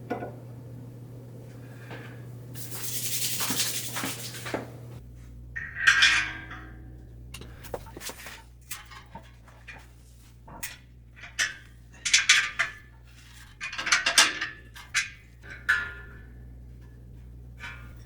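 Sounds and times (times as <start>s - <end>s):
metal tools clinking and scraping: 7.4s - 9.9s.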